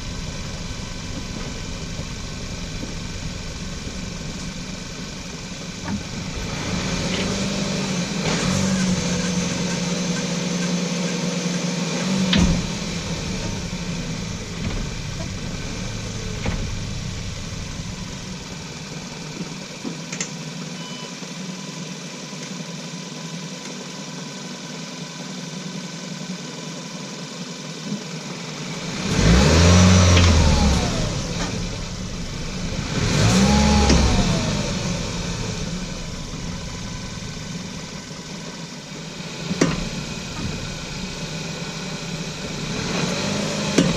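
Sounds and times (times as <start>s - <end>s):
brake clunk: 0.0s - 7.4s, 12.2s - 20.4s, 30.1s - 41.6s, 43.7s - 43.9s
car engine running: 0.0s - 43.9s.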